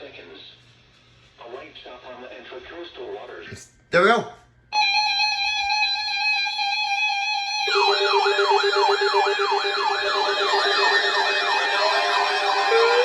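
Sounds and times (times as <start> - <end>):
falling electronic siren sweep: 4.8 - 13.0.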